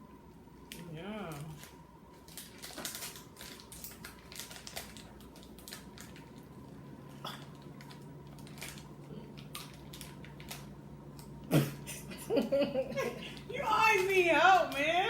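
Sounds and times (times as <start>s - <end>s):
plastic snack packet crinkling: 0.7s - 6.8s, 7.4s - 11.3s.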